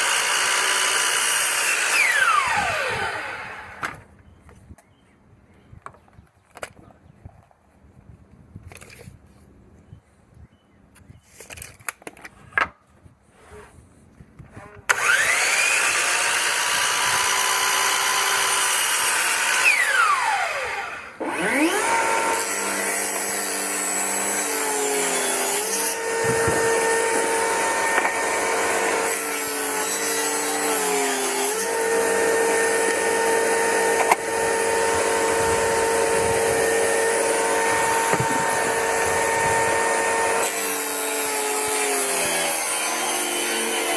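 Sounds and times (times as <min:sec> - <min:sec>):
electric saw cutting wood: 0:00.0 - 0:04.1, 0:14.9 - 0:43.9.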